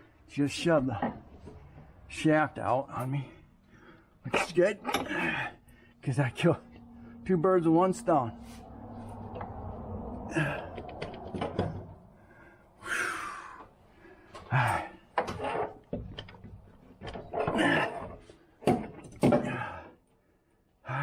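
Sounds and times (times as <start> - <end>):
metal parts and tools knocking: 4.3 - 5.4.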